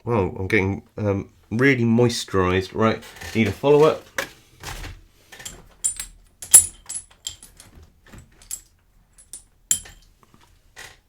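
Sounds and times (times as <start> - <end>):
metal tools clicking and clinking: 5.4 - 10.1.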